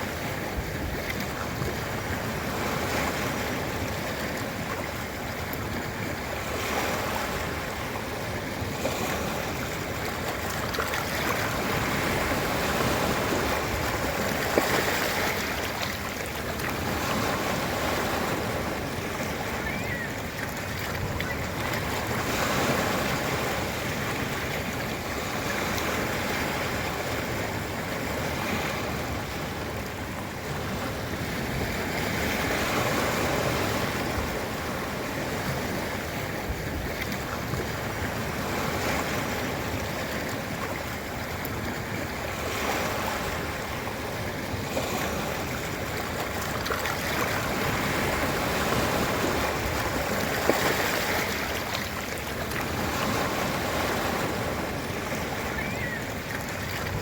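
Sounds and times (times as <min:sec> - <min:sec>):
ocean surf on a beach: 0:00.0 - 0:57.0.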